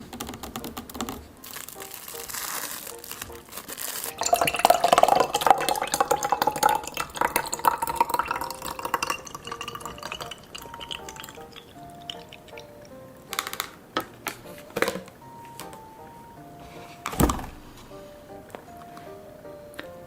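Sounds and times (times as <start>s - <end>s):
liquid splashing and dripping: 4.1s - 12.9s.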